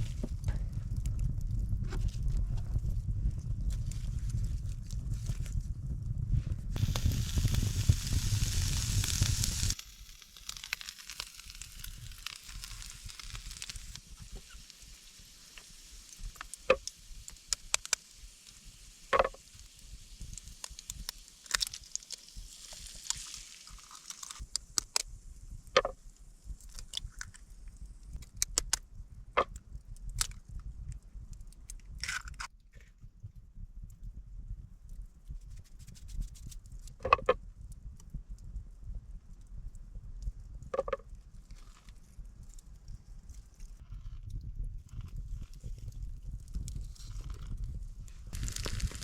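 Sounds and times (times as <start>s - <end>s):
campfire crackling: 0.0s - 32.0s, 37.6s - 49.0s
sharp pops and clicks: 6.8s - 18.5s, 19.1s - 19.5s, 20.2s - 26.0s, 26.6s - 32.6s, 34.9s - 38.5s, 39.4s - 49.0s
faint sizzle: 6.8s - 24.5s, 48.2s - 49.0s.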